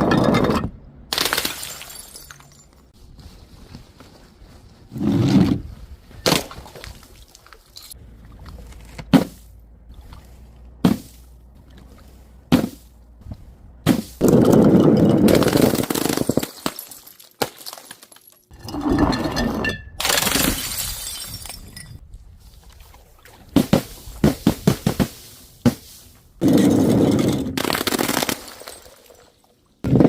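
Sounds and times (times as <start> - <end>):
glass bottles shattering: 0.0 - 2.8, 14.2 - 22.0, 28.2 - 29.4.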